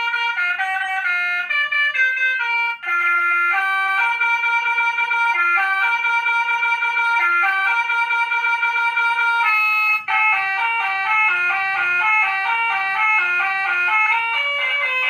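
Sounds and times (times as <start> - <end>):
electronic motorcycle horn tones: 9.5 - 12.8, 13.4 - 15.0.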